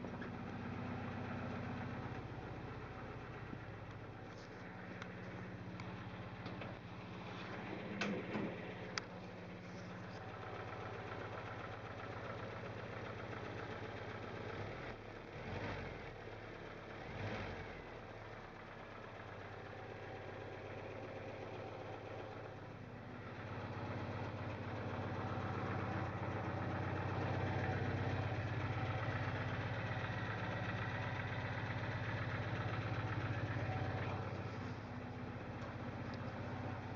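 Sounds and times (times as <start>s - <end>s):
car engine idling: 0.0s - 36.9s
engine clacking: 0.0s - 36.9s.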